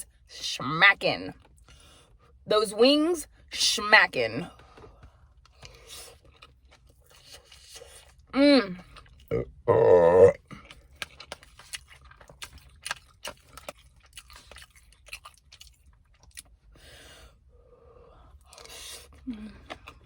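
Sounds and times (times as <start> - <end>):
person chewing crunchy food: 4.6 - 16.7, 18.3 - 20.0
person humming mmm: 9.3 - 10.4.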